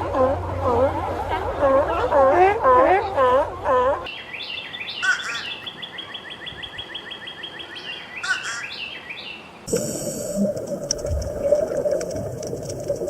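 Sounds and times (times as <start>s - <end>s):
steady mechanical hum: 0.0s - 4.1s.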